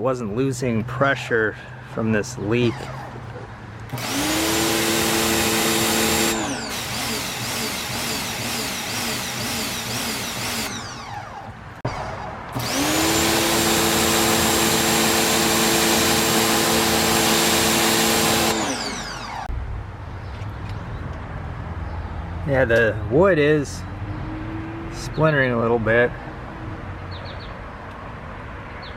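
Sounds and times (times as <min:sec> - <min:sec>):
pressure washer motor humming: 0:02.7 - 0:19.5.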